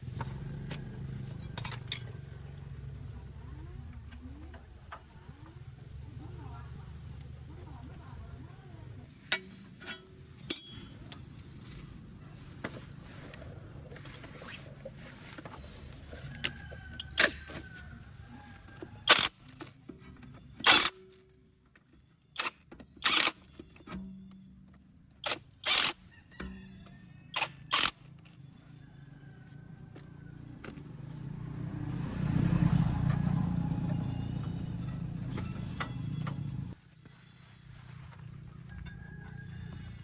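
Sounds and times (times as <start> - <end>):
tools clanking on metal parts: 1.4 - 2.4, 9.3 - 11.4, 16.4 - 17.7
faint metallic ringing: 9.3 - 11.3.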